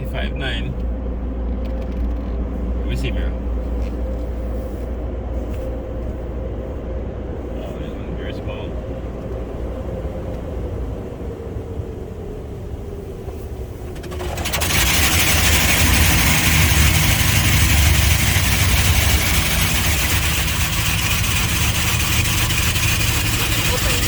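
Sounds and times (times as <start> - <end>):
car engine idling: 0.0 - 24.0
car wash water jets spraying: 7.2 - 24.0.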